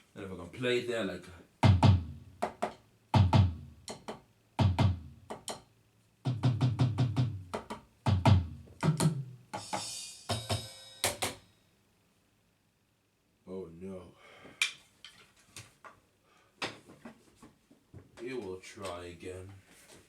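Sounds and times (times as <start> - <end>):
electronic drum tom and kick strokes: 1.6 - 5.6, 6.3 - 11.4.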